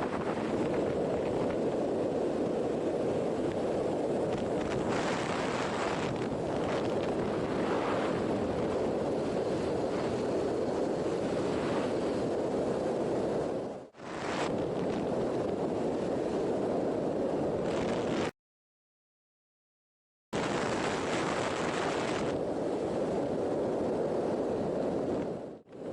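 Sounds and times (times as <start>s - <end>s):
wind on microphone: 0.0s - 18.3s, 20.4s - 25.9s.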